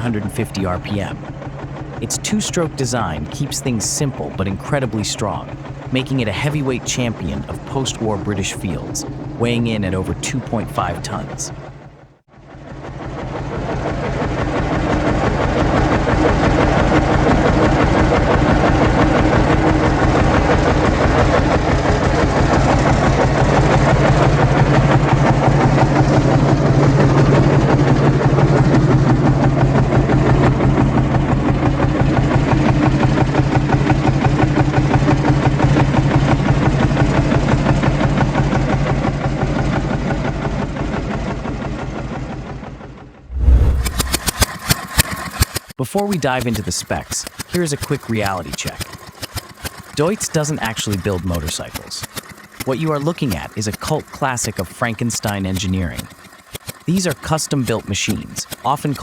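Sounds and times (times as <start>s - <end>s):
tractor diesel engine running: 0.0s - 12.1s, 46.2s - 59.0s.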